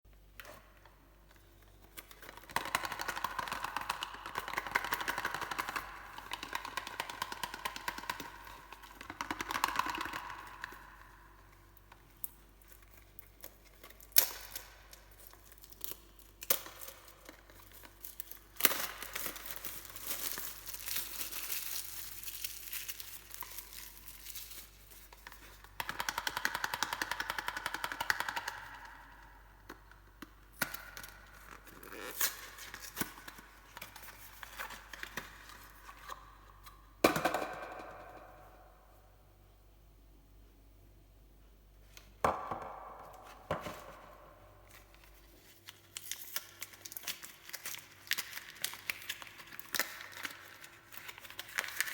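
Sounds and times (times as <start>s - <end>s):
wrapper crinkling and tearing: 12.2s - 25.8s, 44.0s - 51.9s.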